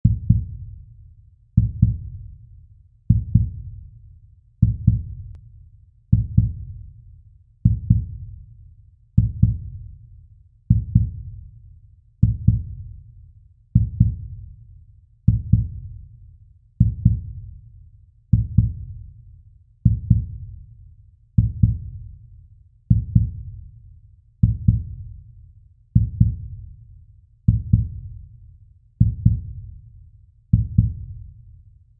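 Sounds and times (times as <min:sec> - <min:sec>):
slow heartbeat: 0:00.0 - 0:00.8, 0:01.6 - 0:02.4, 0:03.1 - 0:03.8, 0:04.6 - 0:05.4, 0:06.1 - 0:06.9, 0:07.6 - 0:08.4, 0:09.2 - 0:10.0, 0:10.7 - 0:11.4, 0:12.2 - 0:13.0, 0:13.8 - 0:14.5, 0:15.3 - 0:16.0, 0:16.8 - 0:17.6, 0:18.3 - 0:19.1, 0:19.8 - 0:20.6, 0:21.4 - 0:22.2, 0:22.9 - 0:23.6, 0:24.4 - 0:25.2, 0:26.0 - 0:26.7, 0:27.5 - 0:28.3, 0:29.0 - 0:29.8, 0:30.5 - 0:31.3.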